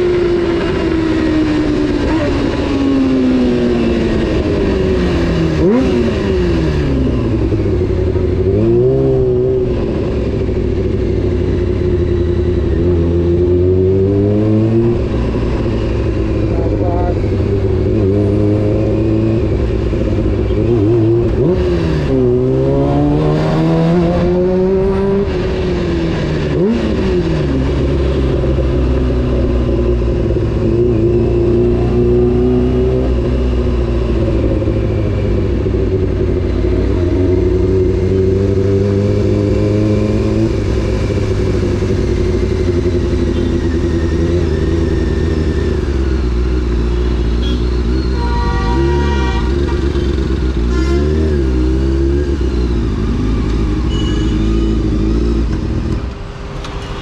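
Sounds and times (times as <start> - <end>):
motorcycle engine accelerating: 0.0 - 56.6.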